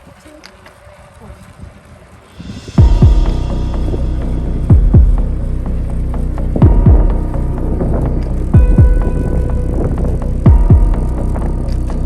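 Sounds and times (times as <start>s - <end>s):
electronic music: 2.4s - 12.0s
deep bass kick drum: 2.5s - 12.0s.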